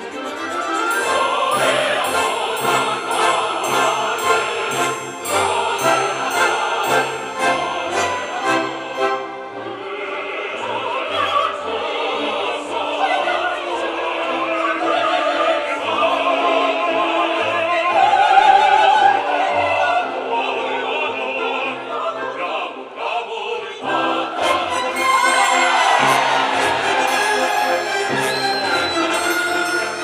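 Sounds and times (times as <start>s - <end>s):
orchestra playing: 0.0s - 10.0s, 24.4s - 30.0s
classical singing: 0.0s - 30.0s.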